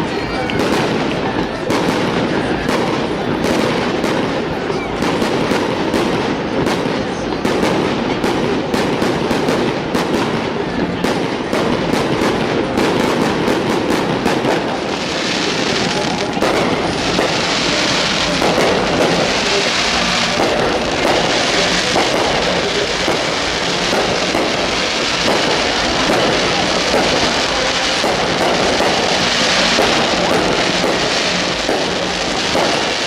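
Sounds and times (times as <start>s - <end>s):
fireworks bangs and crackles: 0.0s - 33.0s
hissing crackle: 13.8s - 33.0s.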